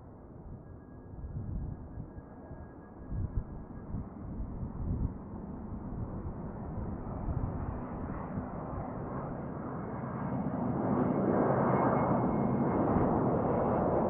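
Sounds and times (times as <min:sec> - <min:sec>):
faint high whine: 0:00.0 - 0:05.2.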